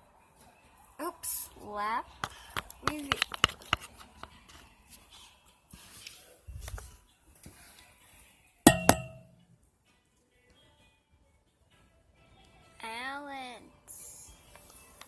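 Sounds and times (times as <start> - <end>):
sharp ringing clinks: 8.7 - 9.4.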